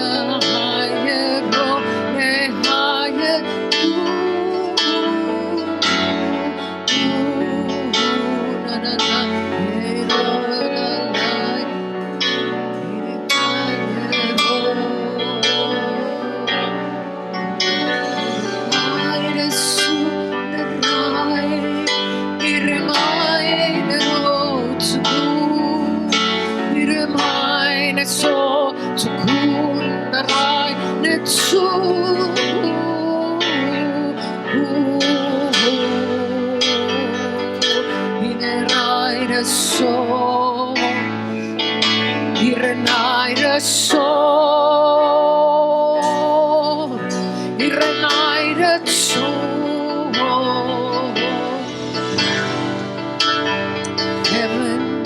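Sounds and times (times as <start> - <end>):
guitar: 0.0 - 55.0
person singing with vibrato: 0.0 - 55.0
sustained instrumental tones: 0.0 - 55.0.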